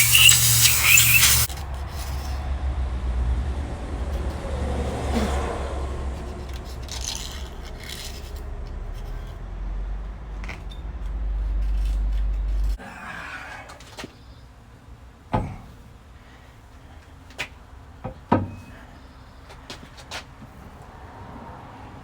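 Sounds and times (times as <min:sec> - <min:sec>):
metal scraping with clicks: 0:00.0 - 0:02.3.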